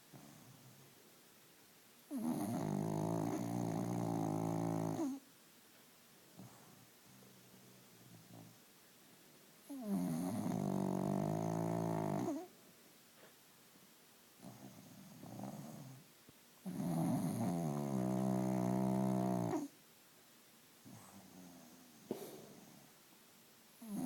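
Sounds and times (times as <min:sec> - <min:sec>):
heavy snoring: 0:02.1 - 0:05.2, 0:09.7 - 0:12.5, 0:14.4 - 0:16.0, 0:16.6 - 0:19.7, 0:23.8 - 0:24.0
soft breathing: 0:20.8 - 0:23.0.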